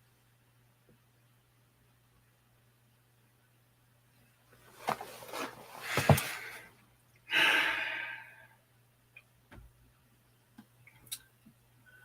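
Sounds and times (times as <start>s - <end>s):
person breathing in: 7.3s - 8.5s
person sighing: 7.3s - 8.5s.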